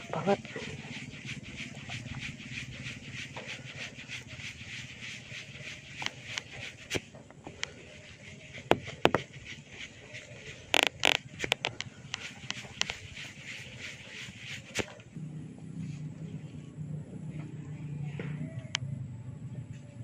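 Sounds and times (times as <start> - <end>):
hair cracking pops: 10.7 - 11.9.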